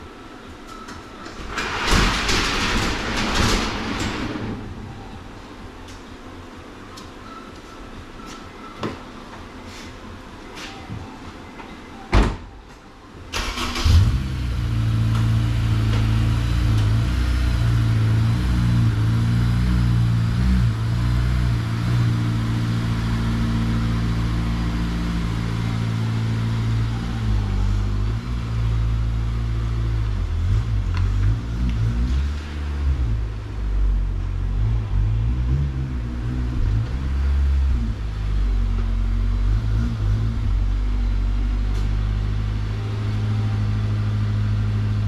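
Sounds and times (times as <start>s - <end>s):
car engine starting and running: 13.1s - 45.0s.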